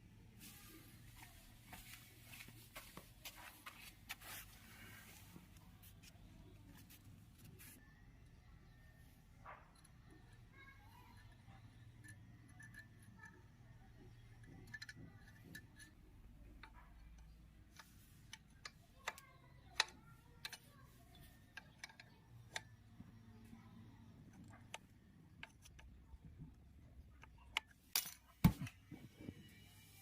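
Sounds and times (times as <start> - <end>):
faint small clicks and taps: 9.4 - 29.4.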